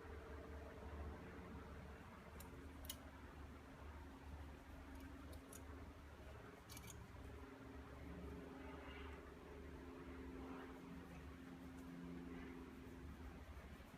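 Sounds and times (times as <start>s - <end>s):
low hum: 0.0s - 13.9s
pistol parts clicking: 6.7s - 7.0s.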